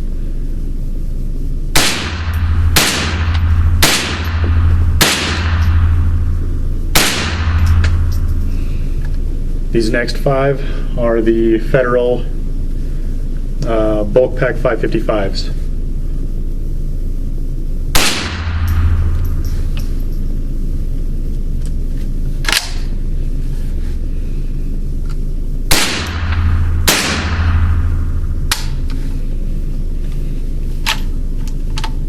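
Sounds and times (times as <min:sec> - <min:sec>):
steady low hum: 0:00.0 - 0:32.0
loud gunshots with echo: 0:01.8 - 0:08.2, 0:18.0 - 0:19.5, 0:25.7 - 0:28.8.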